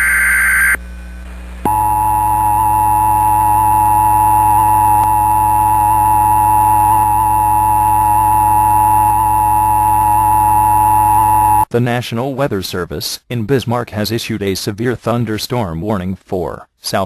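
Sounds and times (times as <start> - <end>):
two-tone alarm: 0.0 - 0.8, 1.7 - 11.7
low hum: 0.0 - 11.7.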